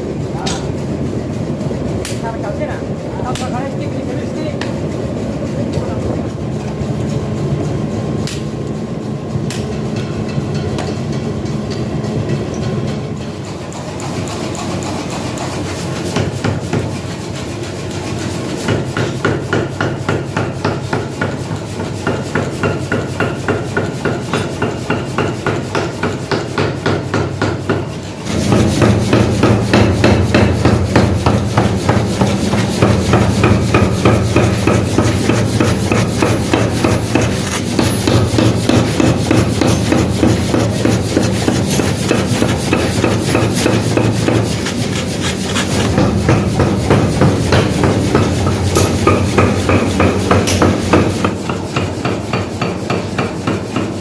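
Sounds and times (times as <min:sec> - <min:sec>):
hammer striking metal: 0:22.0 - 0:53.9.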